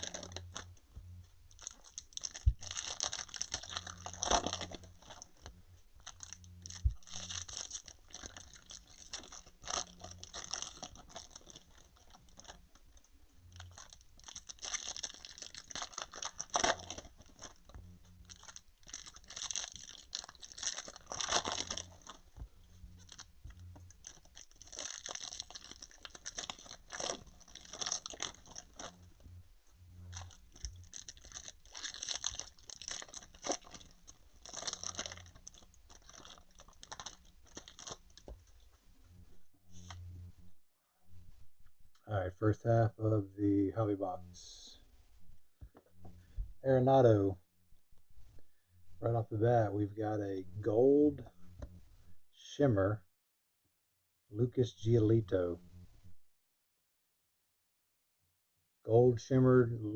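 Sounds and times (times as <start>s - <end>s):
wrappers crinkling and rustling: 0.0s - 40.4s.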